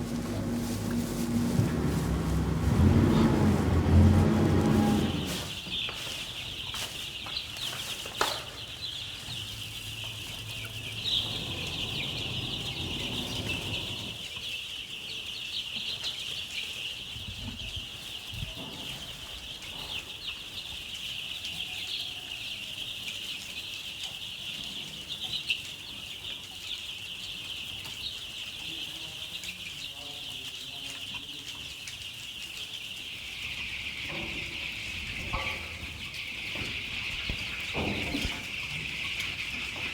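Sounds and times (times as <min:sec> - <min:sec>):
low hum: 0:00.0 - 0:05.5, 0:10.0 - 0:14.3
chickens peeping and clucking: 0:00.0 - 0:39.9.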